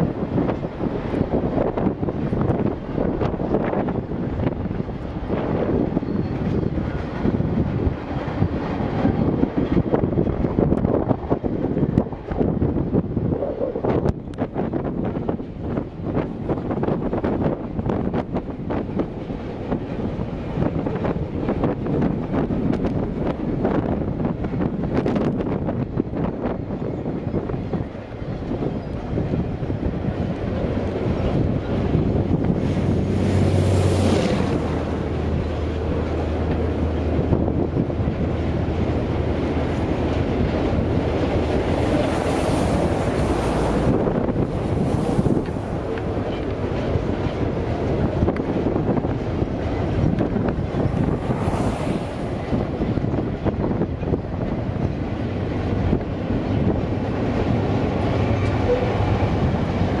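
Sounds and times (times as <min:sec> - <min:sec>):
train rumbling: 0:00.0 - 1:00.0
wind on microphone: 0:00.0 - 1:00.0.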